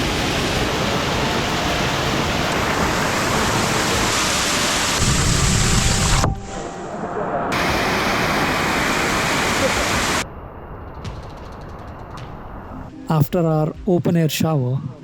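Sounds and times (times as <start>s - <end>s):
stream water rushing and splashing: 0.0s - 6.8s, 7.5s - 10.2s.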